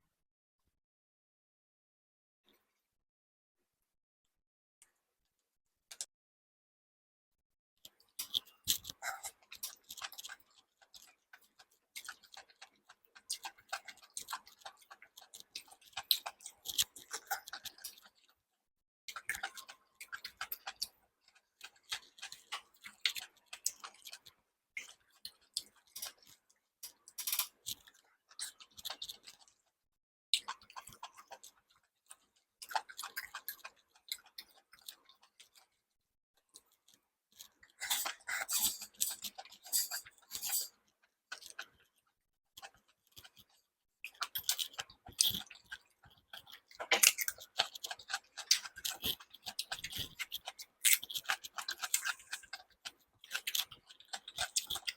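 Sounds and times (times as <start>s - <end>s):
chewing: 7.9s - 18.5s, 19.1s - 29.8s, 30.4s - 54.9s
clicks and crackles of food handling: 7.9s - 18.5s, 19.1s - 29.8s, 30.4s - 54.9s.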